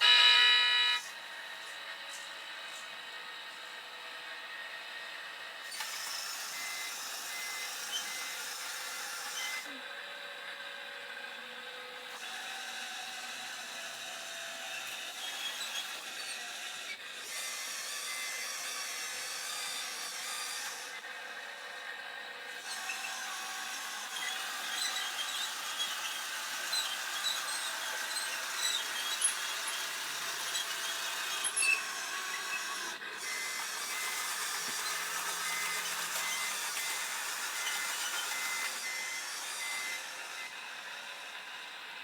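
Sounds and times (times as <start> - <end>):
toy machinery sound effect: 0.0 - 1.1
squeaks: 24.2 - 29.8, 30.5 - 32.7.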